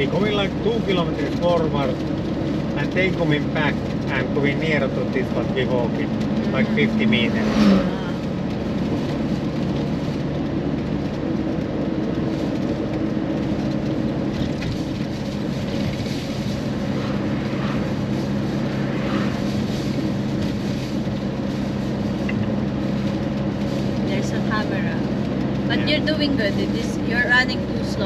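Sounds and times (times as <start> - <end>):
car engine drone: 0.0 - 28.0
tyre and road noise: 0.0 - 28.0.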